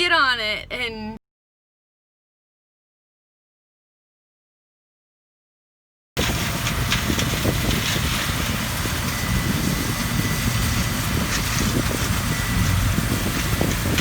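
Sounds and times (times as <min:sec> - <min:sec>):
heavy machine engine running: 0:06.2 - 0:14.0.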